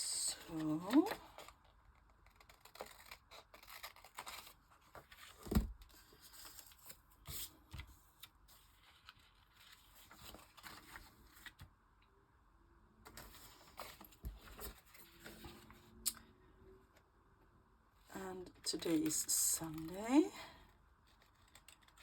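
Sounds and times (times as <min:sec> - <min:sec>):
paper rustling: 0:00.4 - 0:11.7.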